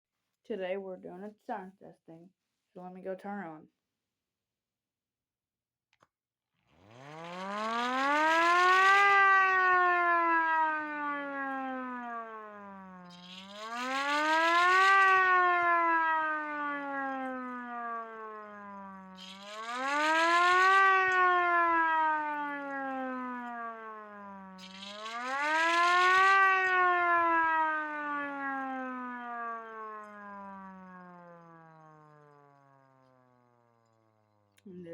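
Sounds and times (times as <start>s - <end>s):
electromechanical siren wailing: 6.8s - 34.6s.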